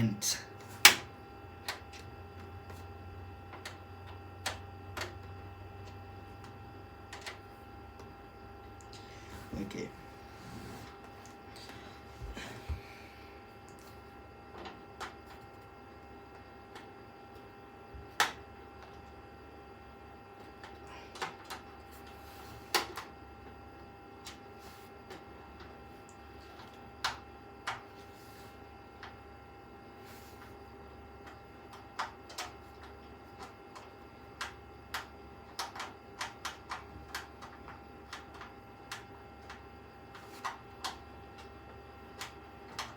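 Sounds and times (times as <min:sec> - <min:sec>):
faint steady whine: 0:00.0 - 0:42.9
steady low hum: 0:00.0 - 0:42.9
computer parts clicking and tapping: 0:31.2 - 0:42.9.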